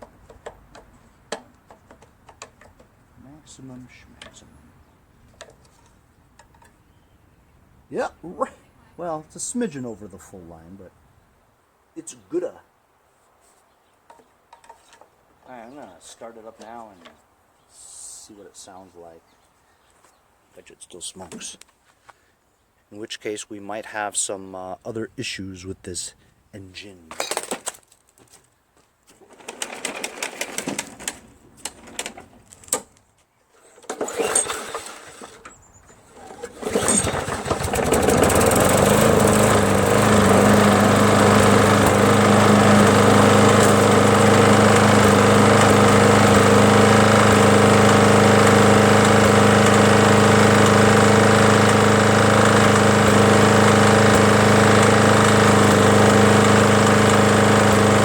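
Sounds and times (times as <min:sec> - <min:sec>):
lawn mower engine running: 0:00.0 - 0:06.8, 0:29.2 - 0:32.6, 0:33.8 - 0:58.0.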